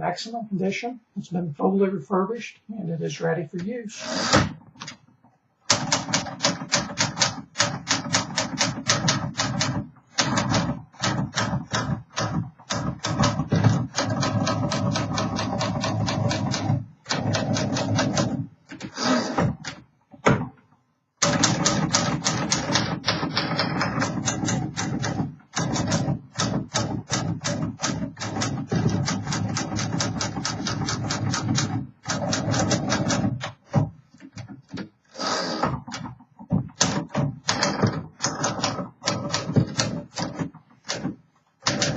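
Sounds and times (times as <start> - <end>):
typewriter keystrokes: 5.7 - 18.9, 21.2 - 33.7, 36.7 - 41.9.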